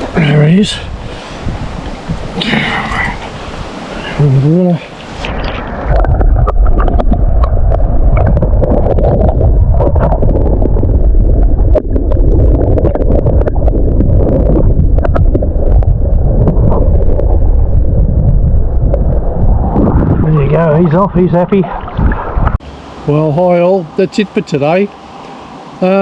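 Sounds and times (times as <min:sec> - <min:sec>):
stream water gurgling: 0:00.0 - 0:17.8, 0:18.8 - 0:26.0
steady low rumble: 0:05.2 - 0:23.6.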